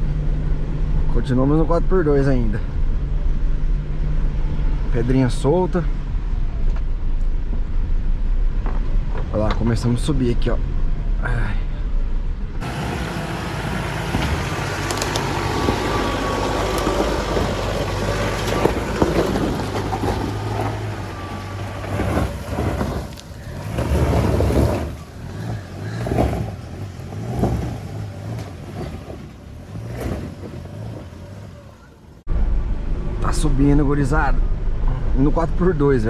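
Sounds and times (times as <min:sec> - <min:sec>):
knocks over loose stones: 0:12.6 - 0:29.0
truck engine pulling under load: 0:12.6 - 0:32.3.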